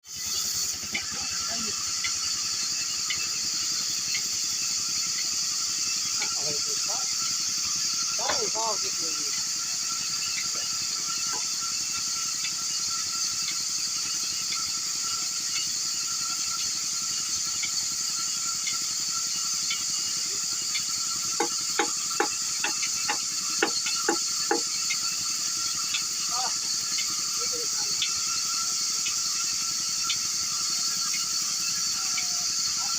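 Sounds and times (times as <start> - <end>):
steady high hiss: 0.0 - 32.9
mallet striking chisel: 21.4 - 24.7.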